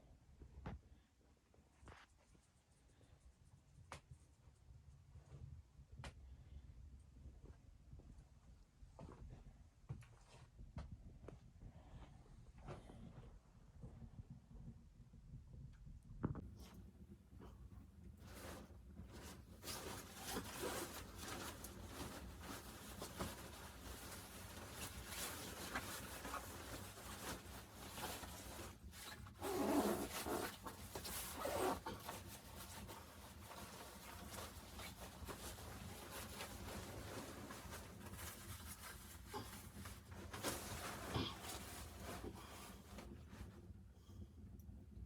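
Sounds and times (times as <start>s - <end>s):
rustling and scraping handling noise: 16.3s - 43.8s.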